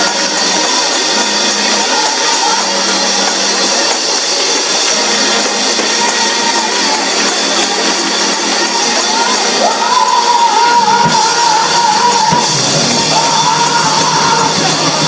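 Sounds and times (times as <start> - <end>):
distorted live worship music: 0.0 - 15.0.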